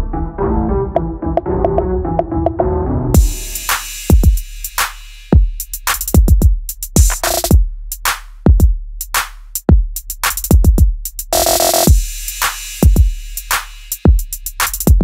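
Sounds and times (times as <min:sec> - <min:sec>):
drum machine beat: 0:03.2 - 0:15.0.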